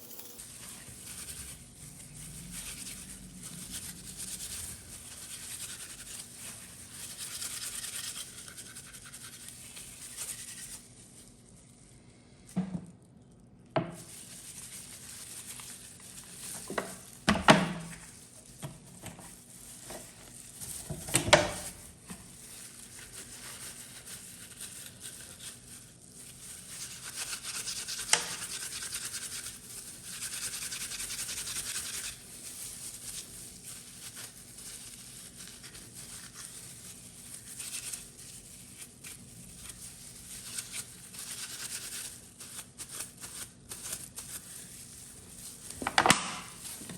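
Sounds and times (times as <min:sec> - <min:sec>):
small brush scrubbing: 0:00.0 - 0:11.3, 0:21.6 - 0:45.7.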